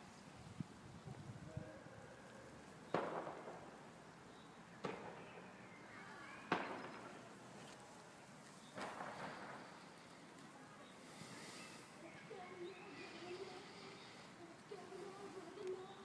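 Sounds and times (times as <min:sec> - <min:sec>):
sharp bangs with echo: 0:02.9 - 0:03.7, 0:04.8 - 0:05.5, 0:06.5 - 0:07.2.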